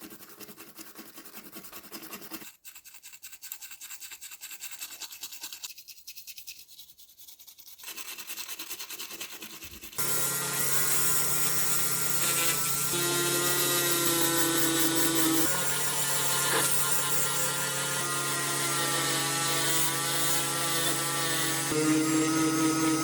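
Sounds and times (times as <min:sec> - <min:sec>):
power tool motor running: 0:10.0 - 0:23.0.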